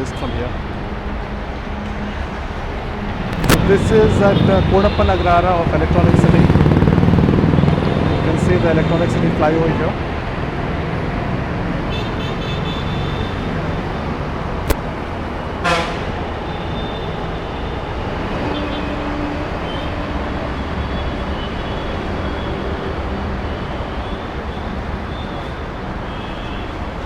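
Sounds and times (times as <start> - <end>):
road traffic noise: 0.0 - 27.0
sharp click: 3.3 - 3.7
vehicle horn toot: 3.6 - 6.5, 11.9 - 13.6, 15.6 - 17.7, 18.4 - 24.2.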